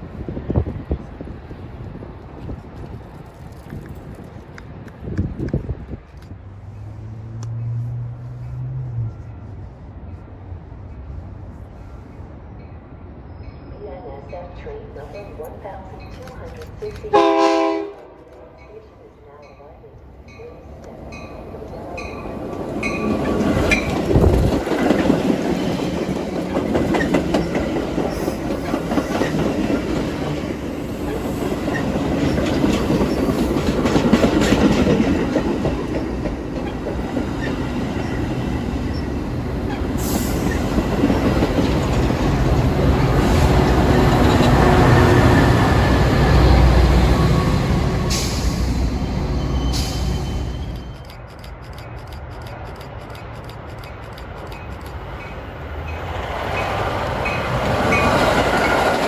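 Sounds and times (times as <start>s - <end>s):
deep train rumble: 0.0s - 59.0s
train wheels clattering over rail joints: 20.9s - 45.7s, 49.7s - 59.0s.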